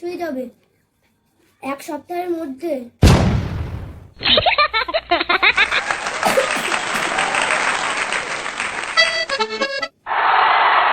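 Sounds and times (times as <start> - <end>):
canned laughter: 4.2 - 9.8
canned applause: 5.5 - 10.9.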